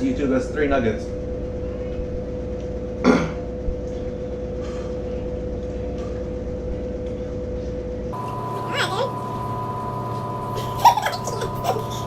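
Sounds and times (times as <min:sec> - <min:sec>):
constant hum tone: 0:00.0 - 0:12.0
higher steady tone: 0:08.2 - 0:12.0.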